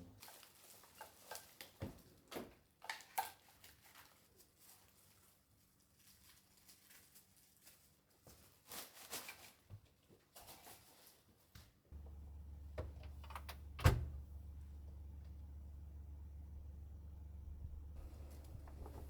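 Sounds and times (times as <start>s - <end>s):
steady low hum: 11.9s - 19.0s
handling rustles and clicks: 12.0s - 19.0s.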